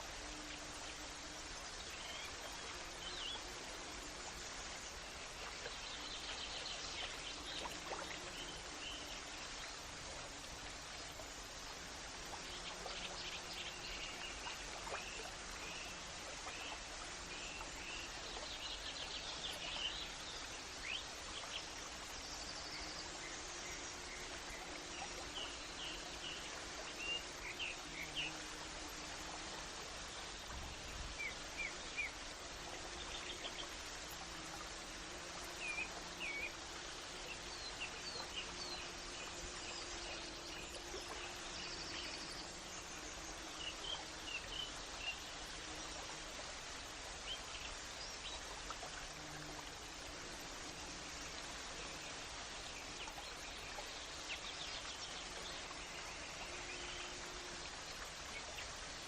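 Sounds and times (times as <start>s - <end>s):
steady background hiss: 0.0s - 59.0s.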